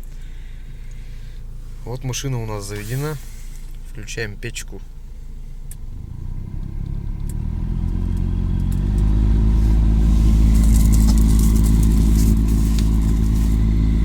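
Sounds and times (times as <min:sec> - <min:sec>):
heater blower fan droning: 0:04.9 - 0:14.0.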